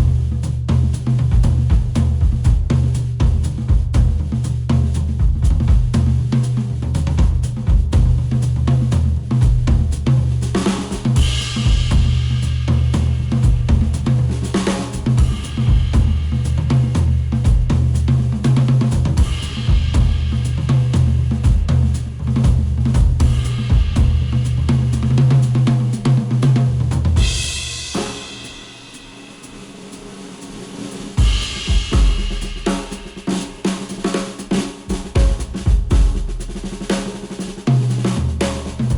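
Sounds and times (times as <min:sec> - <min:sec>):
instrumental music with drums and bass: 0:00.0 - 0:38.9.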